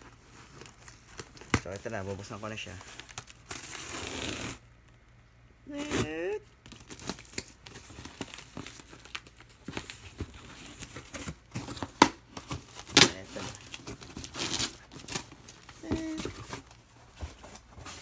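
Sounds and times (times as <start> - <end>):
packaging rustling and crackling: 0.0 - 5.0, 5.8 - 18.0
packaging tearing: 0.4 - 4.6, 5.7 - 16.6.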